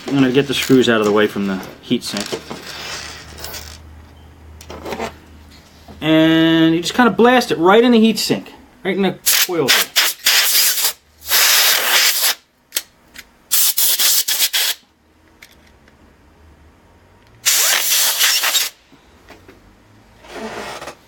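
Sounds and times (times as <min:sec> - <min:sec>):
compressed air hissing bursts: 0:09.3 - 0:12.4, 0:13.5 - 0:14.8, 0:17.4 - 0:18.8
short air puffs: 0:09.3 - 0:12.4, 0:13.5 - 0:14.8, 0:17.4 - 0:18.8.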